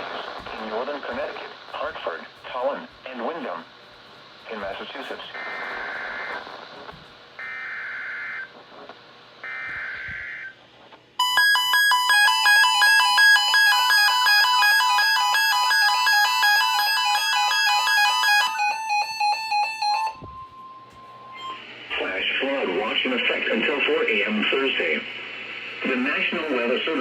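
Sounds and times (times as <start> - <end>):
electronic alert melody beeping: 11.2 - 21.6
data tone bursts: 11.2 - 21.7.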